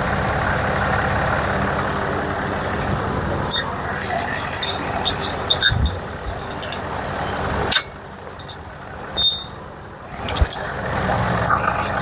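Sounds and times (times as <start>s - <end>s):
ringing metal clank: 3.4s - 7.0s, 7.7s - 8.6s, 9.2s - 9.8s.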